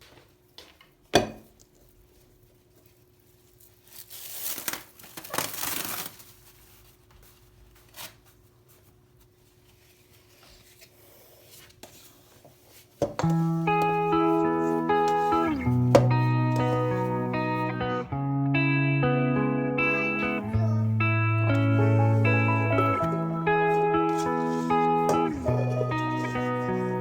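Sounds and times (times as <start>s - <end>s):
packaging rustling and tearing: 2.8s - 8.8s.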